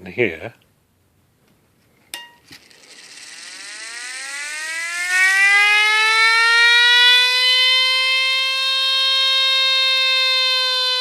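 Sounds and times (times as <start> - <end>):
clockwork alarm siren wail: 2.7 - 11.0.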